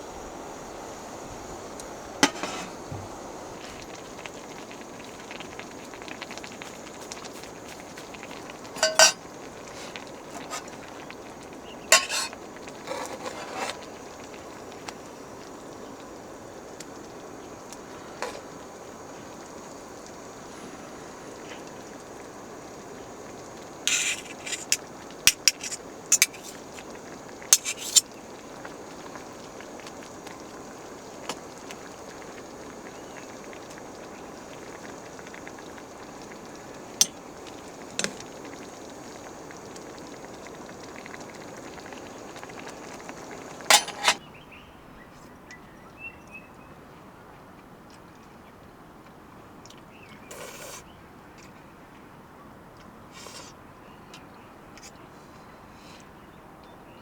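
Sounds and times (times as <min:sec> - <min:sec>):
hissing and bubbling: 0:00.0 - 0:44.2
metal utensils clinking on pot: 0:02.2 - 0:02.8, 0:08.7 - 0:09.2, 0:09.8 - 0:10.7, 0:11.9 - 0:13.8, 0:23.9 - 0:26.5, 0:43.6 - 0:44.2.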